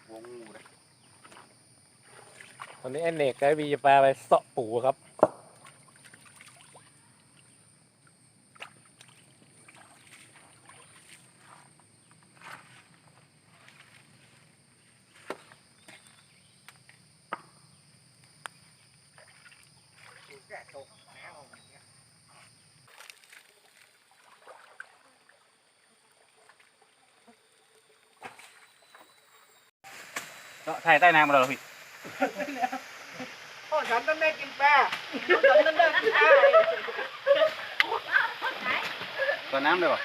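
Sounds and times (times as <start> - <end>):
water sloshing: 0.4 - 3.5, 5.5 - 7.6, 8.4 - 13.0, 19.0 - 20.8, 22.9 - 29.4
small water splashes: 2.1 - 3.6, 5.5 - 11.6, 19.1 - 21.0, 22.9 - 28.6, 31.3 - 40.0.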